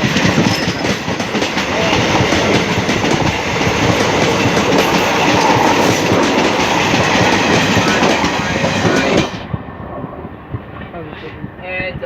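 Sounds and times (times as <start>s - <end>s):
train wheels clattering over rail joints: 0.0s - 9.4s.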